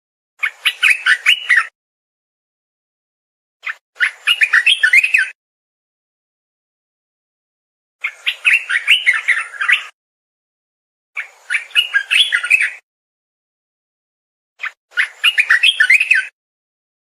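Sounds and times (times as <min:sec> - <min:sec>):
bird warbling song: 0:00.4 - 0:01.8, 0:03.6 - 0:05.4, 0:08.0 - 0:10.0, 0:11.2 - 0:12.8, 0:14.6 - 0:16.4.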